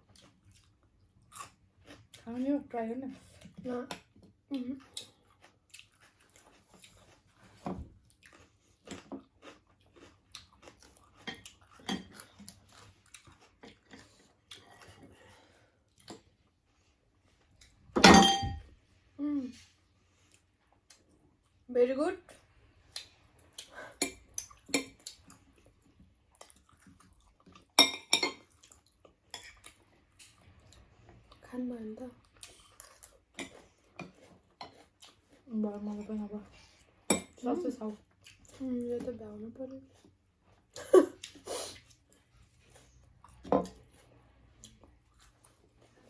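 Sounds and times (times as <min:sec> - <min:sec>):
chewing and biting: 0:00.0 - 0:02.3, 0:04.8 - 0:15.2, 0:22.8 - 0:27.8
cutlery clinking on dishes: 0:18.0 - 0:18.6, 0:27.8 - 0:28.5.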